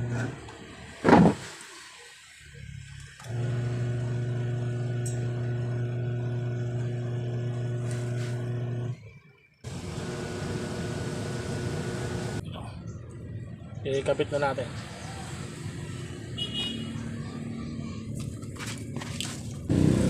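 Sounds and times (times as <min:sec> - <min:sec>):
electric motor hum: 0:03.3 - 0:09.0, 0:09.7 - 0:12.4.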